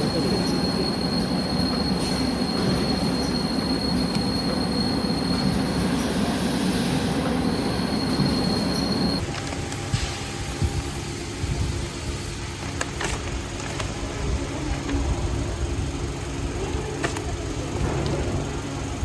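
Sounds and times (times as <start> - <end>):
thin high whine: 0.0 - 12.6
machinery rumble: 0.0 - 19.0.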